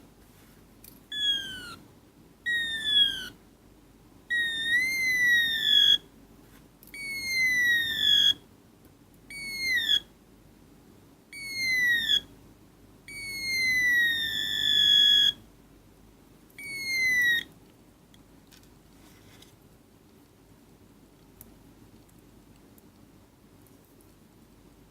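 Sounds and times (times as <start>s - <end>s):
synthetic whistling squawks: 1.1s - 1.8s, 2.5s - 3.3s, 4.3s - 6.0s, 7.0s - 8.4s, 9.3s - 10.1s, 11.4s - 12.3s, 13.1s - 15.4s.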